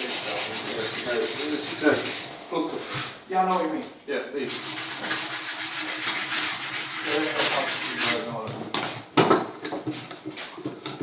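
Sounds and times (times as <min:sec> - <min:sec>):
wood being sanded by hand: 0:00.0 - 0:02.4, 0:04.4 - 0:08.3.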